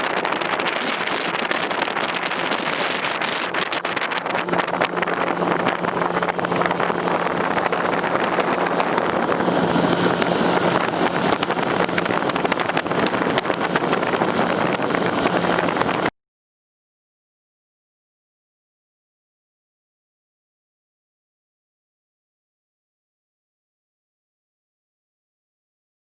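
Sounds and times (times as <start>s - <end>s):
outboard motor running: 0.0s - 16.1s
wind and water rushing: 0.0s - 16.1s.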